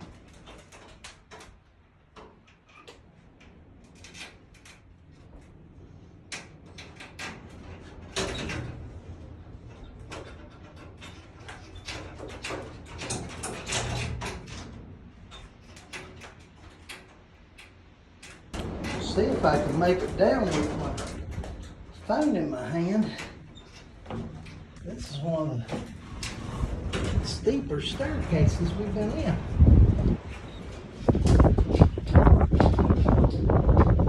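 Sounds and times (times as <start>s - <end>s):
wind buffeting microphone: 18.5s - 34.0s.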